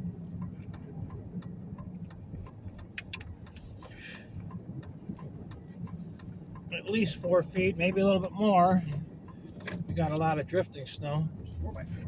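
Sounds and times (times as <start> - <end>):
light regular clicking: 0.0 - 12.0
vehicle engine humming: 0.0 - 12.0.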